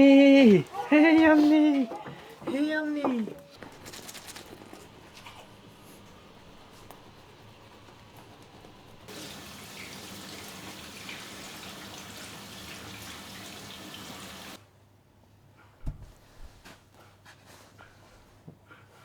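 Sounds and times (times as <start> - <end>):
water running: 0.0 - 14.6.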